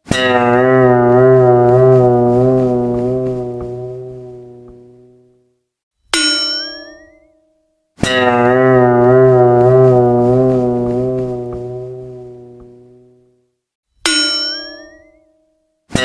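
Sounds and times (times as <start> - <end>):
plucked twang sliding upward: 0.1 - 5.2, 8.3 - 13.1
wavering tone with vibrato: 0.1 - 5.4, 8.2 - 13.2.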